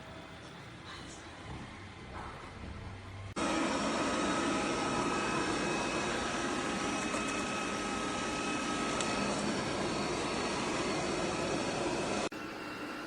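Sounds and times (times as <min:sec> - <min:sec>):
thin steady whine: 0:00.0 - 0:13.0
robot vacuum motor whir: 0:03.4 - 0:12.3.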